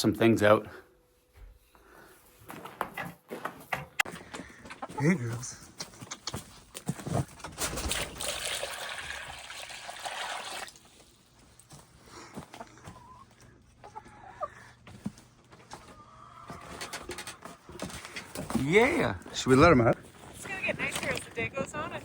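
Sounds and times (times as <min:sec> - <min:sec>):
hens clucking: 0:03.7 - 0:08.0, 0:12.0 - 0:22.0
water pouring: 0:07.8 - 0:10.9.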